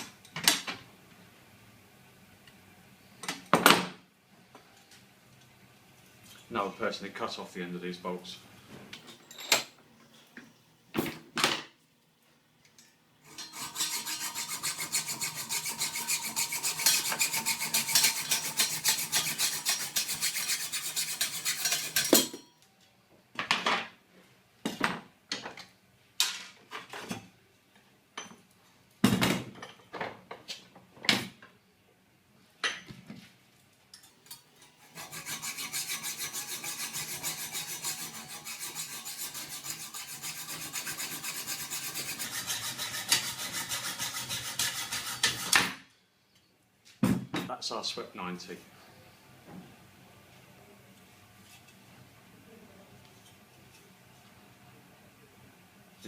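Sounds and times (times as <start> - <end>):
saw cutting steel bolts: 13.3 - 22.4, 34.3 - 45.7.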